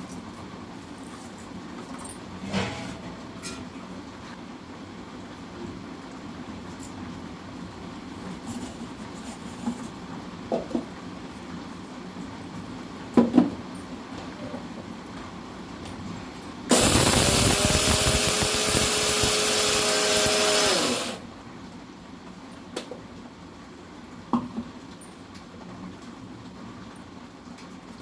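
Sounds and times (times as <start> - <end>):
mixer grinder motor whine: 16.7 - 21.2.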